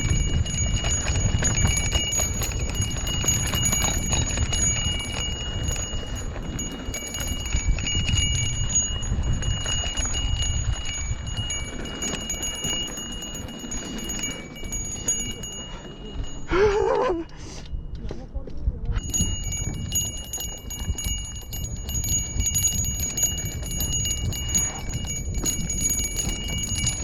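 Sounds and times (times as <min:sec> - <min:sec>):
bicycle bell ringing: 0:00.0 - 0:18.2, 0:18.9 - 0:27.0
low wind: 0:00.0 - 0:27.0.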